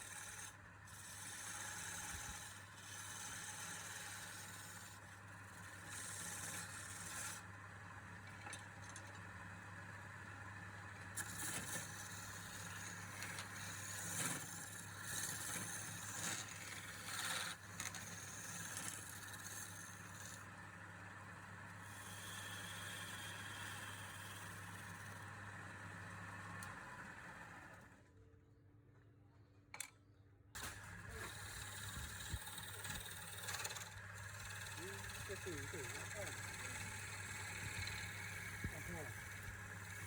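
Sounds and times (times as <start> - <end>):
turning tool scraping wood: 0.0 - 7.5, 11.2 - 20.4, 21.8 - 25.2, 30.6 - 40.0
low motor hum: 30.6 - 40.0.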